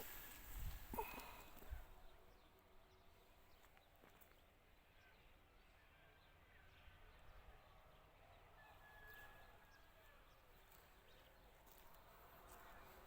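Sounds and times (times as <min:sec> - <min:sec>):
faint bird calls: 0:00.0 - 0:02.2.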